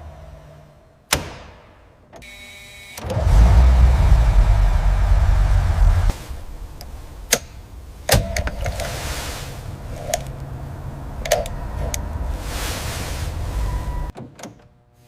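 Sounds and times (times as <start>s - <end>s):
car engine running: 3.0s - 14.1s
mechanical clicks and knocks: 14.1s - 14.8s.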